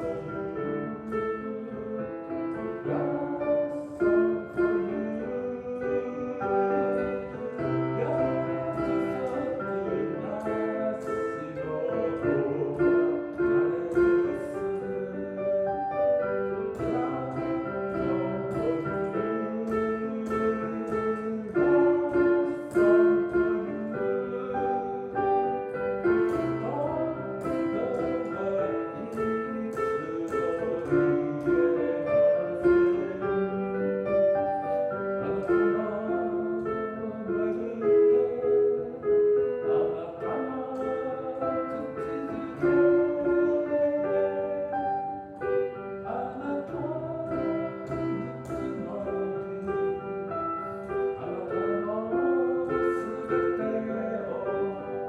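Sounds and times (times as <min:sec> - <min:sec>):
slow piano melody: 0:00.0 - 0:55.0.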